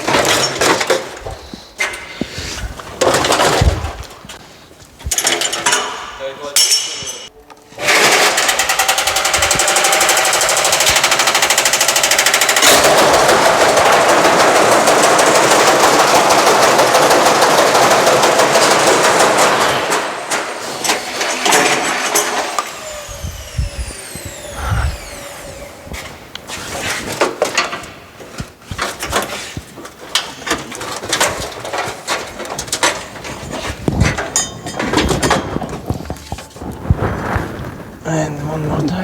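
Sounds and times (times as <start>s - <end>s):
motor winding down whine: 20.9s - 26.4s.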